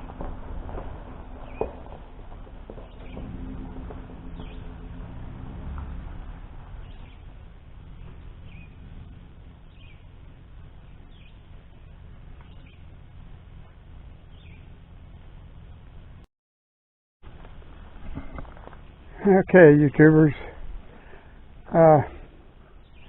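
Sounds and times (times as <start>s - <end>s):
low steady rumble: 0.0s - 16.3s, 17.2s - 23.0s
faint bird chirps: 8.0s - 8.9s, 9.6s - 13.0s, 14.2s - 14.8s.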